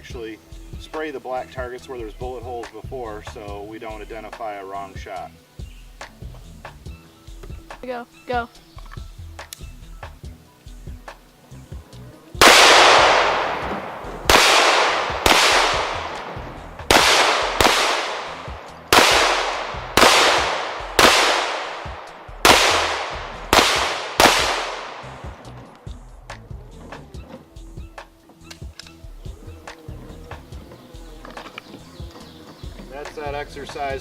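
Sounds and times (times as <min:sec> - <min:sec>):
pistol shots echoing: 0:12.4 - 0:25.4.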